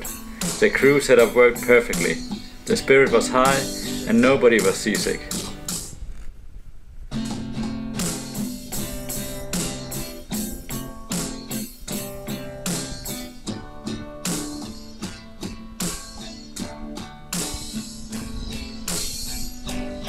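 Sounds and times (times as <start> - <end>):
steady percussion beat: 0.0 - 2.5, 7.3 - 13.4
guitar background music: 0.0 - 6.0, 7.1 - 20.0.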